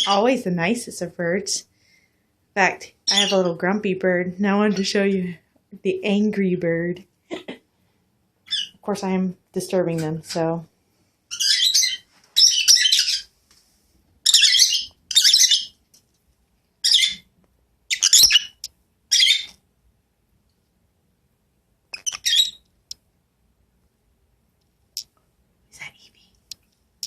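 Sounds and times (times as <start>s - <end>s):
bird giving harsh squawks: 14.3s - 15.7s, 17.9s - 19.6s.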